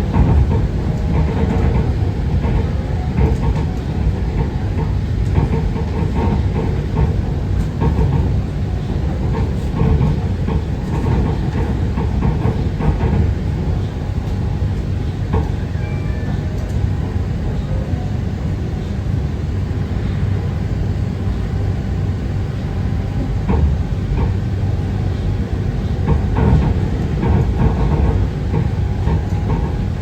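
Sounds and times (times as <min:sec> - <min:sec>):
monorail car rumbling: 0:00.0 - 0:30.0.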